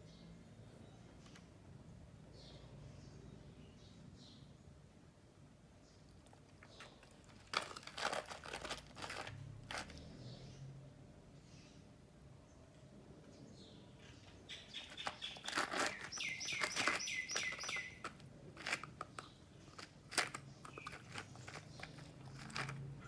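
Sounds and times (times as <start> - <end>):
dog crunching ice cubes: 6.2 - 10.1, 14.7 - 23.0
high chirps: 14.5 - 18.1.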